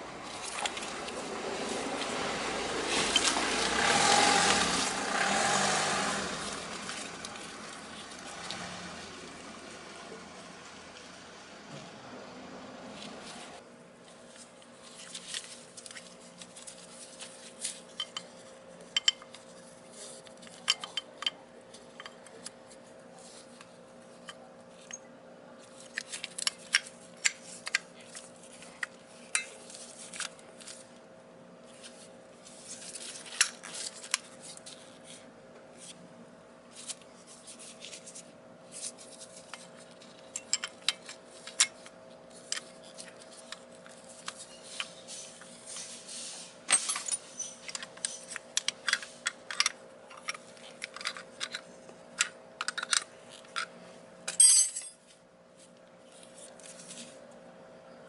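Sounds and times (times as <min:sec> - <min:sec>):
hand tools and metal parts clinking: 0:39.4 - 0:43.4, 0:46.7 - 0:53.7, 0:54.3 - 0:55.0.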